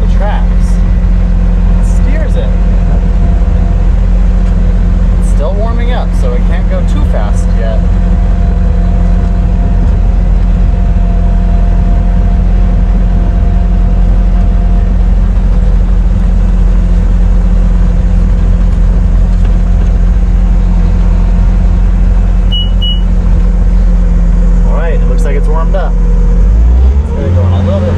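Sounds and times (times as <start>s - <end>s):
skid steer running: 0.0s - 27.9s
short high beep: 22.5s - 23.1s.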